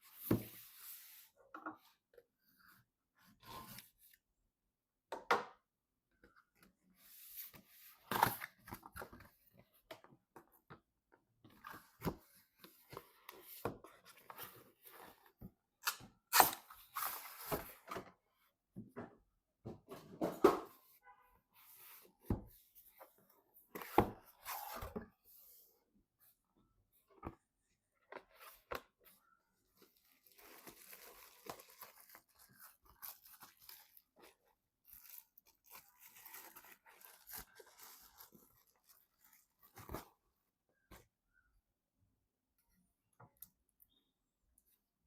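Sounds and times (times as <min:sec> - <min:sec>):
packaging rustling and scraping: 0:29.8 - 0:40.1.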